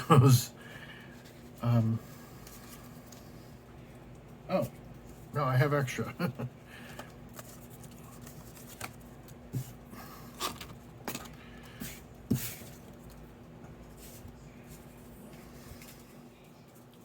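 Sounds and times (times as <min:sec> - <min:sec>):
faint steady hum: 0:00.0 - 0:17.0
paper rustling: 0:06.8 - 0:09.8.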